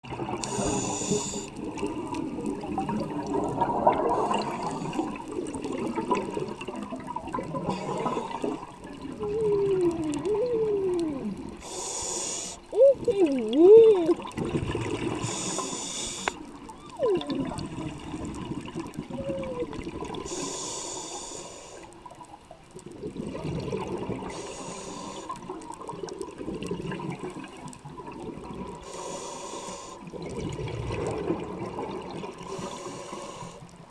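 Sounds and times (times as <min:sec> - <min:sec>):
regulator bubbles: 0:00.0 - 0:11.8, 0:12.6 - 0:20.4, 0:22.0 - 0:28.9, 0:30.0 - 0:32.8
muffled voice underwater: 0:09.0 - 0:11.5, 0:12.7 - 0:14.4, 0:16.8 - 0:18.1, 0:19.0 - 0:20.0.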